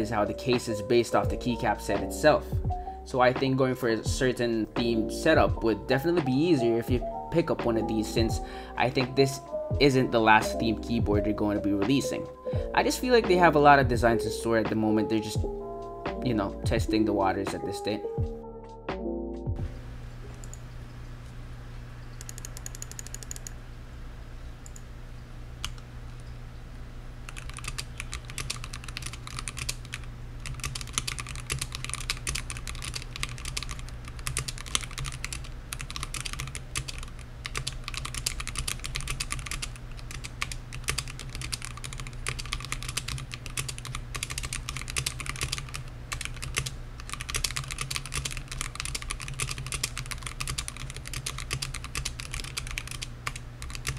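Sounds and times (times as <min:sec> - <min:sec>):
steady low hum: 0:00.0 - 0:14.7, 0:15.4 - 0:53.9
mechanical keyboard typing: 0:22.2 - 0:23.5, 0:27.3 - 0:53.9.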